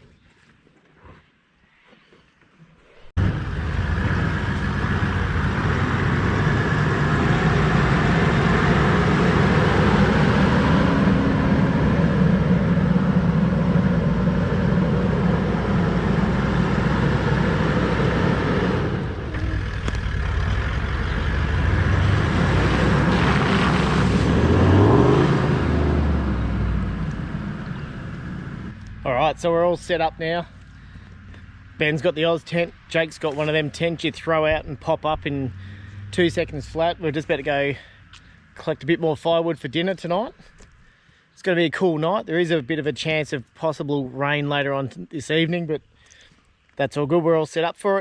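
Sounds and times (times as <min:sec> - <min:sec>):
tyre and road noise: 0:02.8 - 0:41.0
engine revving: 0:03.2 - 0:33.0
vehicle engine running: 0:03.2 - 0:38.6.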